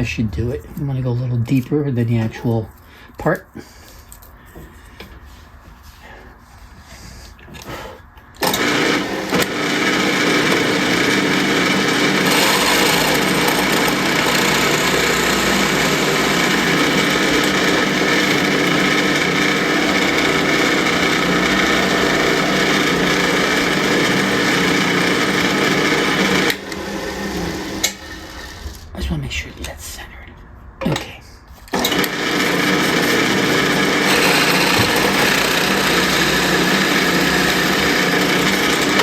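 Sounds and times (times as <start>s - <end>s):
drill press drilling wood: 8.4s - 28.8s, 31.7s - 39.0s.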